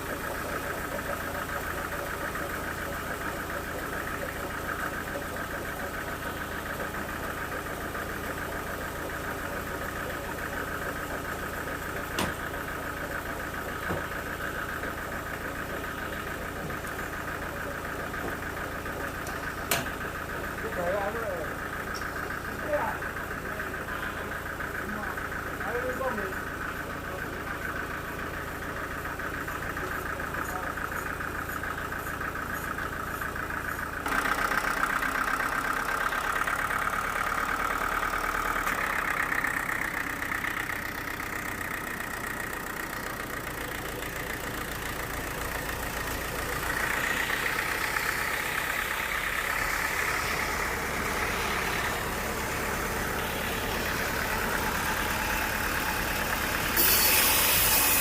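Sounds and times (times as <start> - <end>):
sawmill machinery motor drone: 0.0 - 58.0.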